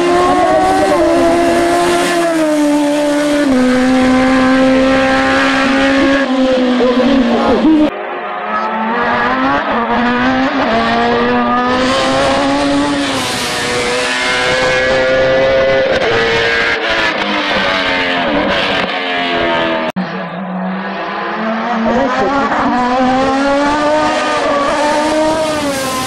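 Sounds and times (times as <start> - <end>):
race car engine at high revs: 0.0 - 26.0.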